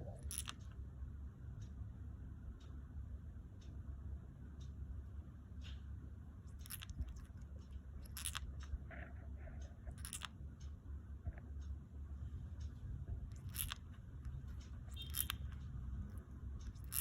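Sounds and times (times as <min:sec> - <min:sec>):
birds scratchy clicks: 0:00.0 - 0:00.8, 0:06.5 - 0:11.4, 0:13.1 - 0:17.0.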